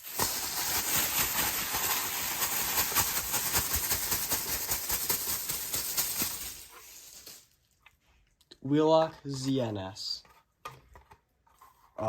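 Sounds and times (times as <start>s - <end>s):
plastic bag crinkling: 0.0s - 7.6s.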